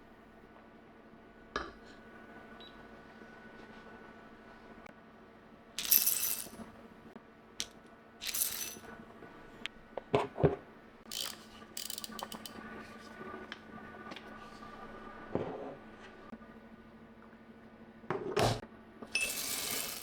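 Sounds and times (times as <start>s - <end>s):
coffee grinder clicks and rattles: 5.8s - 6.6s, 8.2s - 8.8s, 11.1s - 12.6s.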